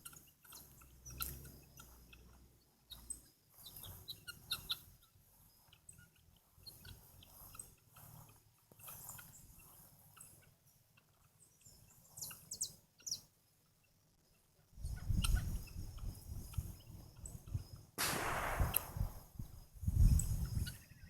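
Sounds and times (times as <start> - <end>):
guineafowl calling harshly: 3.6 - 5.0
low rumble: 18.0 - 19.4.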